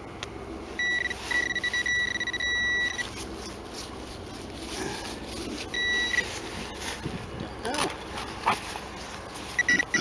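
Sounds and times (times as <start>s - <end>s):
metal detector beep: 0.8s - 3.2s, 5.7s - 6.4s, 9.5s - 10.0s.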